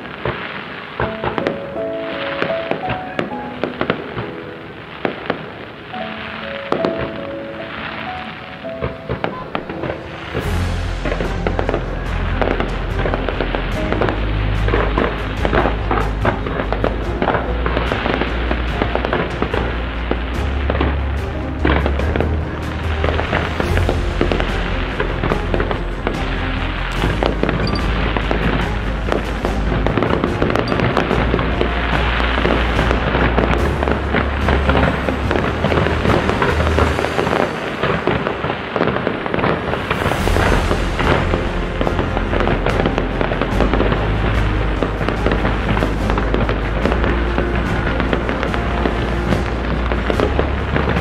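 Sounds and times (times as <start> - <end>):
fireworks bursting and crackling: 0.0 - 51.0
music with bass line: 10.4 - 37.4, 40.0 - 51.0.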